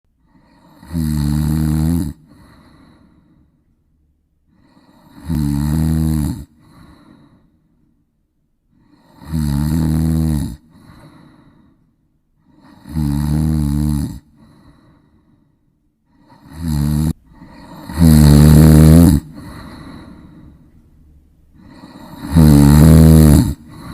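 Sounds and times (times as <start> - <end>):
quiet breath: 0.1 - 1.0, 2.1 - 5.2, 6.4 - 9.3, 10.5 - 13.0, 14.1 - 18.2, 19.2 - 23.9
loud rasping snores: 0.2 - 3.2, 4.5 - 7.4, 8.8 - 11.6, 12.4 - 15.0, 16.1 - 20.6, 21.6 - 23.9.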